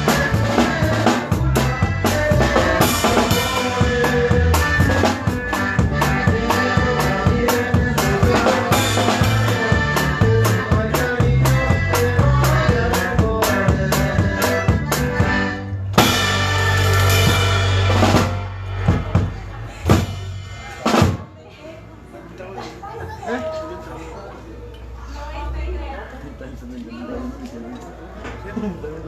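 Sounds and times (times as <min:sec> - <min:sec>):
drum kit beat: 0:00.0 - 0:21.4
live band playing: 0:00.0 - 0:21.5
bass: 0:00.0 - 0:22.1
cymbal crash: 0:16.0 - 0:21.2.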